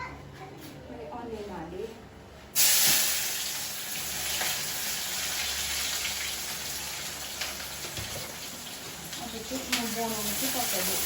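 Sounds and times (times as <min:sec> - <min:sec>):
onions sizzling in hot oil: 0:02.6 - 0:11.0.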